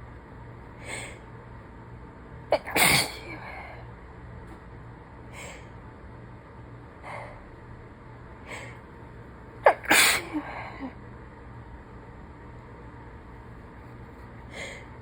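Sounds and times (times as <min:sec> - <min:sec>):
woman sneezing: 0:02.6 - 0:03.4, 0:09.6 - 0:10.9.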